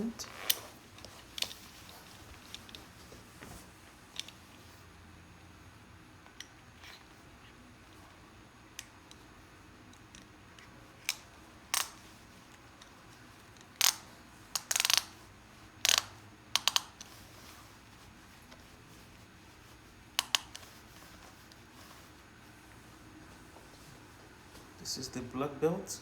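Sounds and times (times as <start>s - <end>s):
metal belt buckle clicking: 9.9s - 15.2s, 15.8s - 17.2s.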